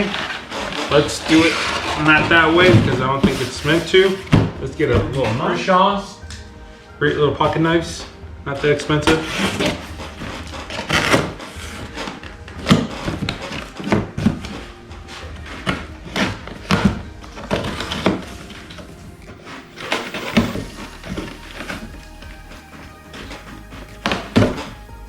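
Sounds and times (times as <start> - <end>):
background music: 0.0 - 25.0.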